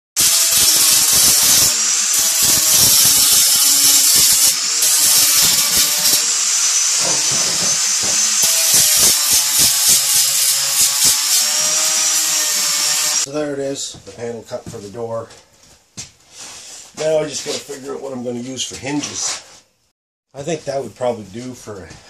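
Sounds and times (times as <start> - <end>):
power tool whining cutting metal: 0.2 - 13.3.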